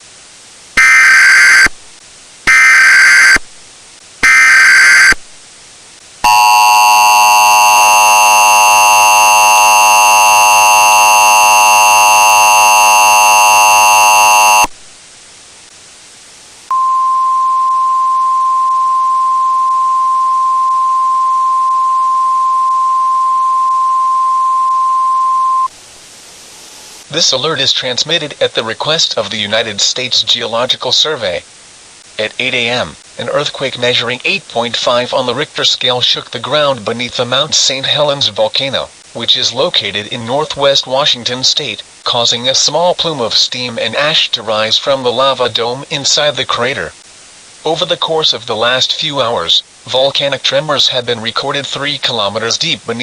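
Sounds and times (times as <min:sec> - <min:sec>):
harsh two-tone attention signal: 0:00.8 - 0:01.7, 0:02.5 - 0:03.4, 0:04.2 - 0:05.2, 0:06.2 - 0:14.7
screeching data bursts: 0:00.8 - 0:01.7, 0:02.5 - 0:03.4, 0:04.2 - 0:05.2, 0:06.2 - 0:14.7
steady single-pitch alert tone: 0:00.8 - 0:01.7, 0:02.5 - 0:03.4, 0:04.2 - 0:05.2, 0:06.2 - 0:14.7.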